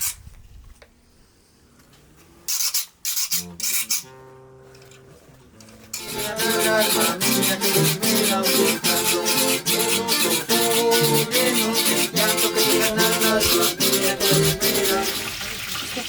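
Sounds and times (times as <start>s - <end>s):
guacharaca scraping beat: 2.5s - 4.1s, 5.9s - 15.8s
strummed and plucked guitar strings: 3.4s - 15.4s.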